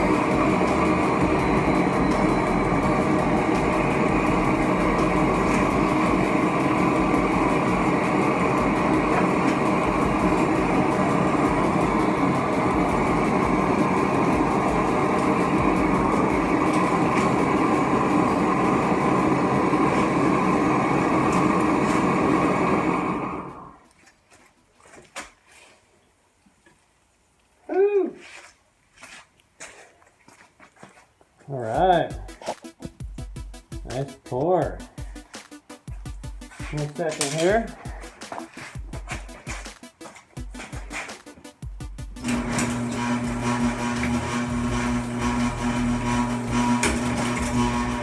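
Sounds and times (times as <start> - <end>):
furnace burner rushing: 0.0 - 23.7, 42.2 - 48.0.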